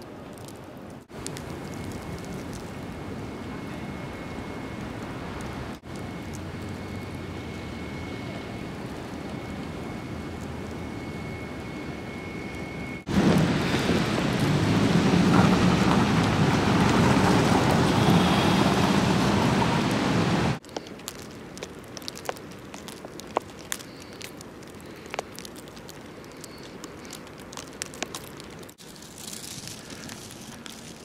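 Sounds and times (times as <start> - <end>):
faint high whine: 0.0 - 16.0
snowstorm wind rushing: 13.0 - 20.6.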